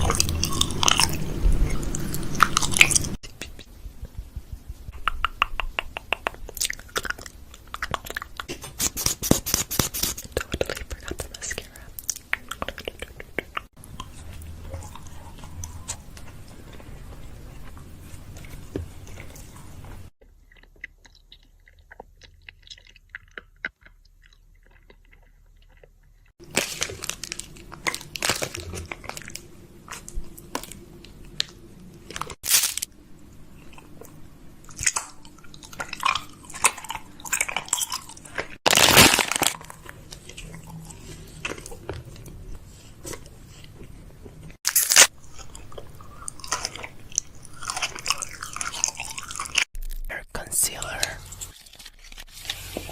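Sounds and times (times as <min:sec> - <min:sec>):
crunchy chewing: 0:00.0 - 0:03.2, 0:06.2 - 0:32.9, 0:33.5 - 0:50.2.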